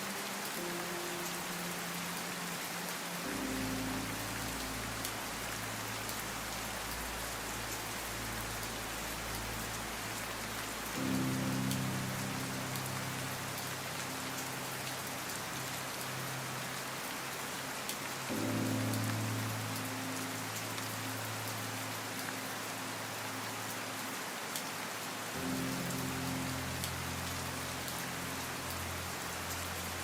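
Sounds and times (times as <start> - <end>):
rain pattering: 0.0 - 30.0
low musical drone: 0.1 - 16.8.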